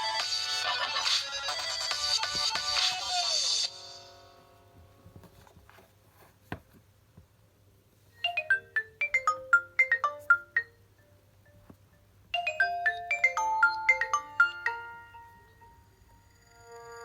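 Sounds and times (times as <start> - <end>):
phone ringtone: 8.2 - 17.0.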